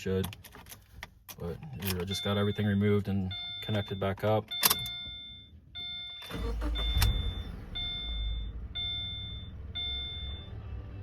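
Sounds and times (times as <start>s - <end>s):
dashboard warning chime: 1.8s - 11.0s
car engine cranking and idling: 5.7s - 11.0s.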